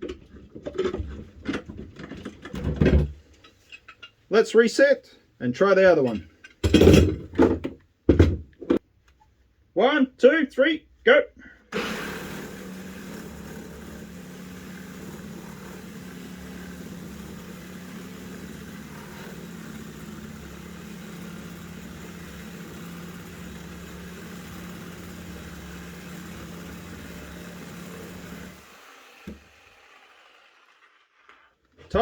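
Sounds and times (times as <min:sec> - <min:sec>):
knock: 0:06.6 - 0:08.8
reciprocating saw cutting timber: 0:11.7 - 0:32.0.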